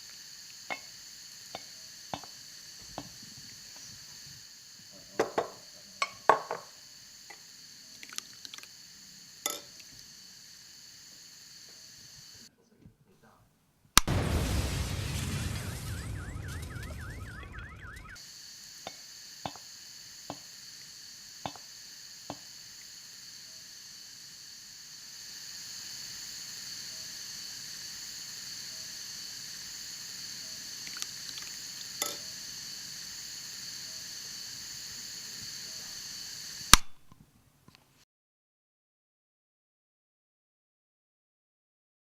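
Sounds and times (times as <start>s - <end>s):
high-pitched hiss: 0.0s - 12.6s, 14.0s - 37.2s
loud bang: 14.0s - 18.2s
sharp clicks: 36.7s - 37.2s.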